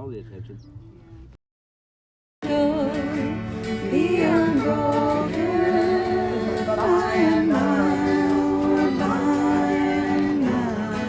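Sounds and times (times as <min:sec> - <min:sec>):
music accompaniment: 0:02.4 - 0:11.0
person singing long notes: 0:02.5 - 0:11.0.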